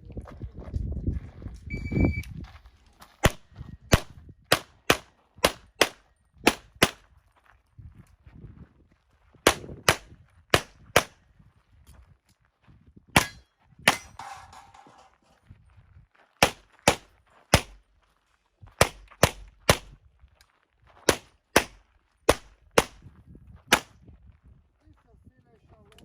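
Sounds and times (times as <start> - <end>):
handgun shots: 3.2 - 7.0, 9.5 - 11.2, 13.2 - 14.4, 16.4 - 17.8, 18.8 - 20.0, 21.1 - 23.0, 23.7 - 24.0.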